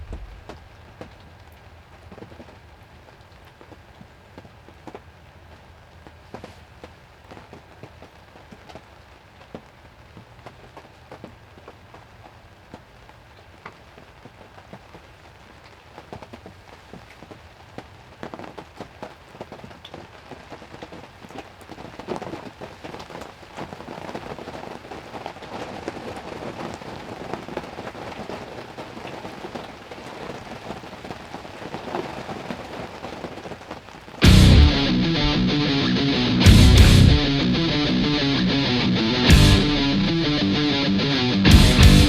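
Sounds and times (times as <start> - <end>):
heavy rain falling: 0.0 - 2.6, 18.0 - 42.0.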